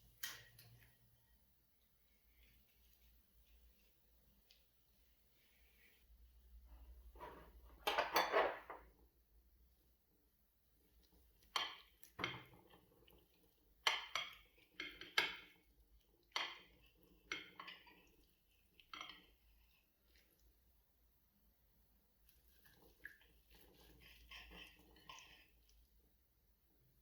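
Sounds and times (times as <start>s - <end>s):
cutlery clinking on a plate: 7.8s - 8.8s.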